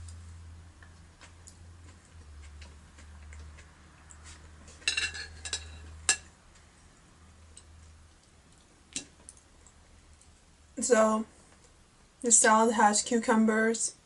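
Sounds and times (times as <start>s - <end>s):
cutlery clinking on a plate: 4.8s - 6.3s.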